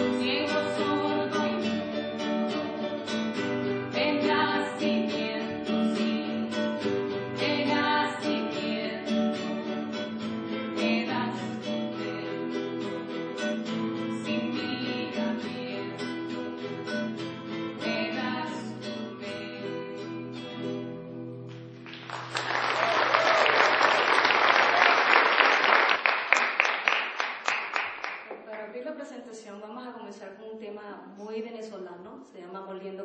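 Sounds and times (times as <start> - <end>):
acoustic guitars strumming: 0.0 - 22.4.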